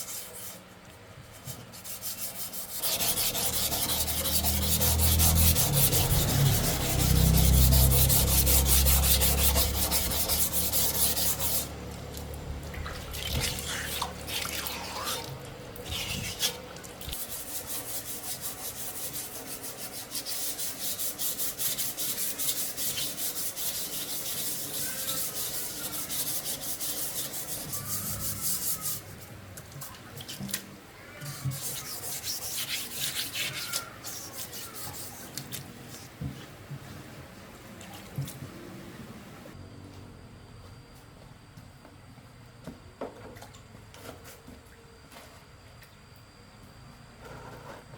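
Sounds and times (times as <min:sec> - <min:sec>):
metal being scrubbed: 0:01.6 - 0:11.8, 0:17.2 - 0:29.1, 0:31.2 - 0:35.4.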